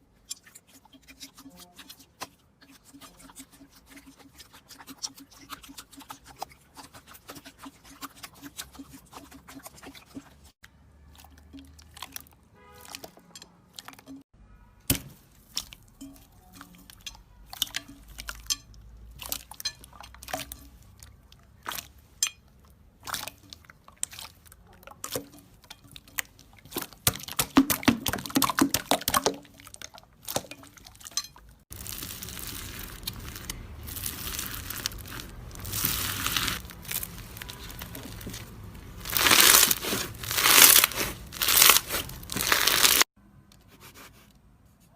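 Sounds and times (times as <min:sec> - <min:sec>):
slime crinkling noise: 0:31.7 - 0:43.1
slime squeezed by hand: 0:31.8 - 0:43.0.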